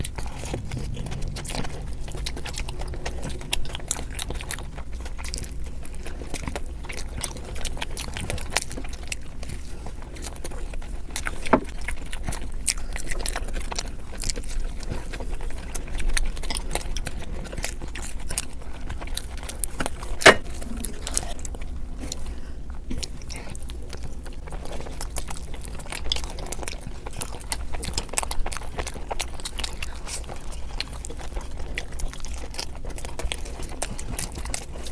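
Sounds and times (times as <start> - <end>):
low hum: 0.0 - 8.7, 19.4 - 25.3
chewing and biting crackles: 0.0 - 34.9.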